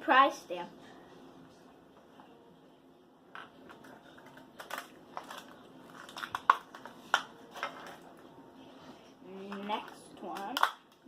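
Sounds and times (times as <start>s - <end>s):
plastic packaging crackling: 3.7s - 8.1s.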